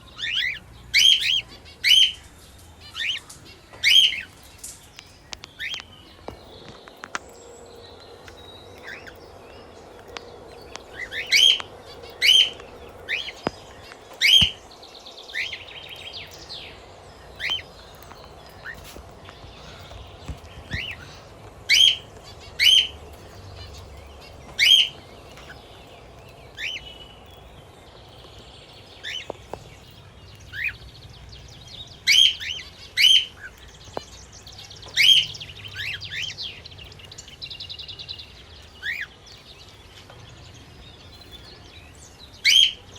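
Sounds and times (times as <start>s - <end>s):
soft warbling chatter: 0.0s - 42.9s
parrots chirping sharply: 17.3s - 25.7s.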